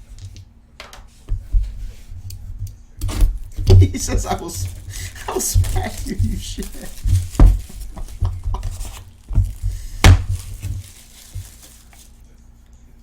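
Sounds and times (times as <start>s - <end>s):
cardboard rustling: 1.1s - 12.2s
knocks and thumps on cardboard box: 3.0s - 11.5s.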